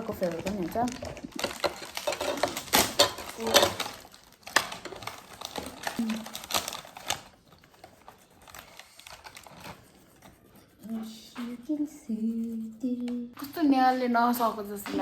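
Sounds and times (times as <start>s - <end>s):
plastic packet crinkling: 0.0s - 9.9s.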